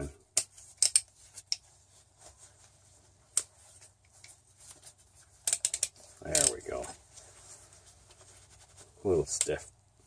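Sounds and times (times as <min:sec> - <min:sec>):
hand ratchet clicking: 0:00.4 - 0:01.6, 0:05.4 - 0:06.5.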